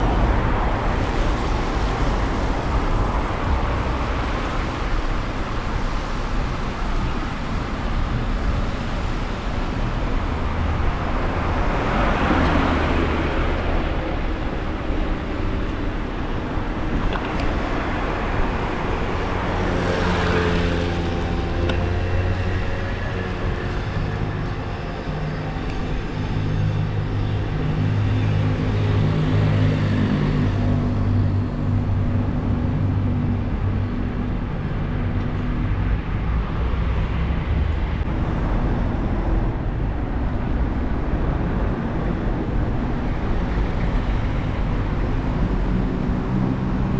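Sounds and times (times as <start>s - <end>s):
street traffic noise: 0.0s - 46.9s
car passing: 17.5s - 46.9s.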